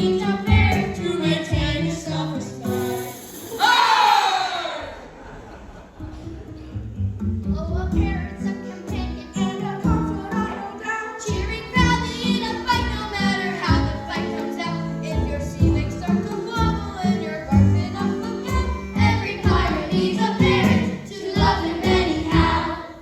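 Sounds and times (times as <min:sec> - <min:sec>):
instrumental accompaniment: 0:06.0 - 0:23.0
voices singing a melody: 0:17.0 - 0:23.0.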